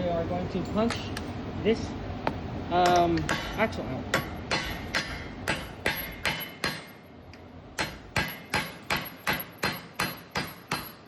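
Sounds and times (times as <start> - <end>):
hammer striking metal punch: 2.8 - 7.0, 7.8 - 11.0.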